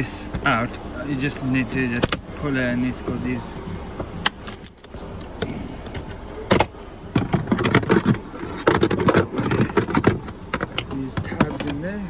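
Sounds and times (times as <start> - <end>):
plastic clatter: 6.5 - 11.8.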